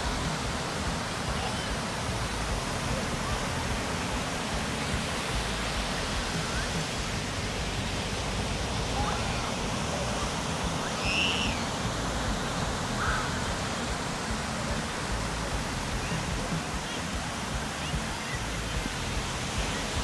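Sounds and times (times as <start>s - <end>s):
steady rushing noise: 0.0s - 20.0s
faint high chirps: 10.8s - 11.8s.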